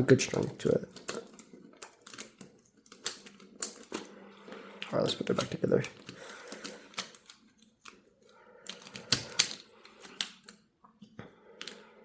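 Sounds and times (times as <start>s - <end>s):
plastic cube pieces clicking: 0.3s - 4.1s, 5.4s - 8.0s, 8.6s - 10.6s.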